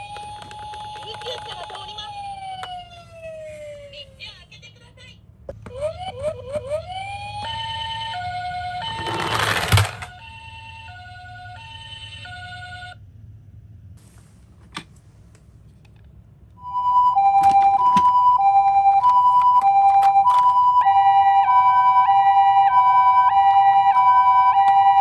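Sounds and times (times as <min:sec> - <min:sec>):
toy ambulance siren: 0:00.0 - 0:03.9, 0:05.6 - 0:13.0, 0:16.6 - 0:25.0.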